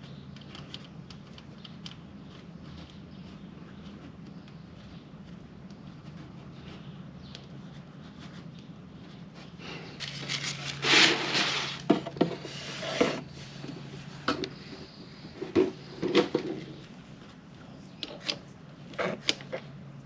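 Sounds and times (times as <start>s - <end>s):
steady low hum: 0.0s - 20.0s
tools rubbing and scraping: 4.8s - 16.9s.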